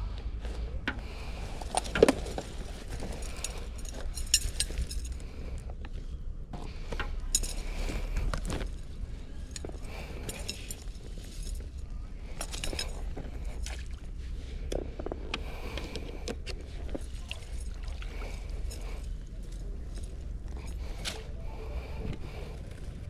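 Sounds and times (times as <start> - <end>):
low steady rumble: 0.0 - 23.0
small hard objects clinking: 1.5 - 5.2, 7.2 - 13.7.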